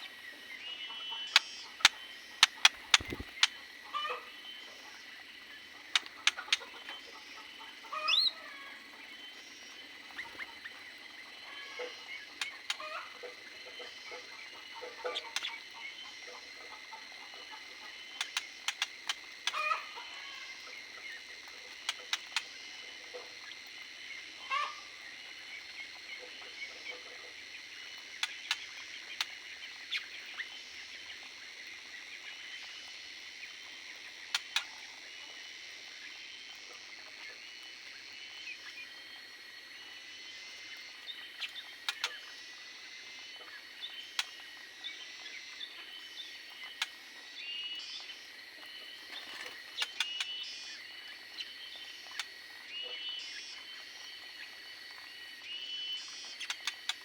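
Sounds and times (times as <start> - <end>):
birds calling: 0.0 - 16.2.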